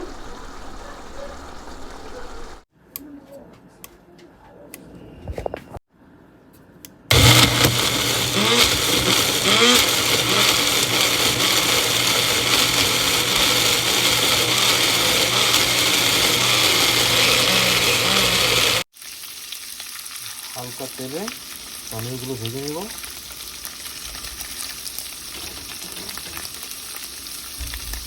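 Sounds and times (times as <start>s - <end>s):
electric mixer grinder running: 7.1s - 18.9s.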